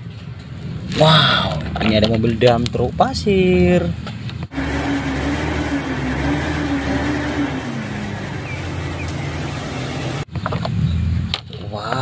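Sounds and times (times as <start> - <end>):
truck engine running: 4.0 - 11.4.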